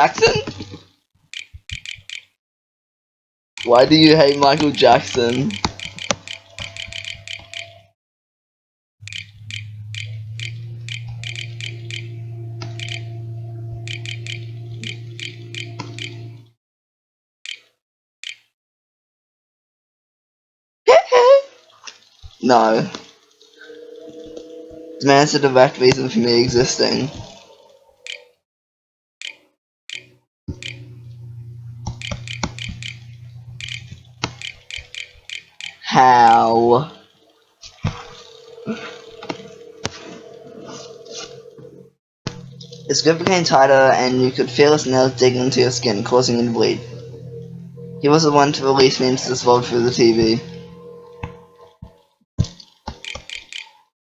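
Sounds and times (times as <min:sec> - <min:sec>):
laptop keyboard typing: 0:01.4 - 0:02.3, 0:04.6 - 0:07.7, 0:09.0 - 0:12.0, 0:13.9 - 0:16.2, 0:29.2 - 0:30.8, 0:31.8 - 0:35.8, 0:52.9 - 0:53.7
typing on a laptop keyboard: 0:01.4 - 0:02.3, 0:05.5 - 0:07.7, 0:31.9 - 0:33.0, 0:33.6 - 0:35.8, 0:52.9 - 0:53.7
low electrical hum: 0:09.0 - 0:16.5, 0:30.5 - 0:34.8, 0:42.4 - 0:51.6.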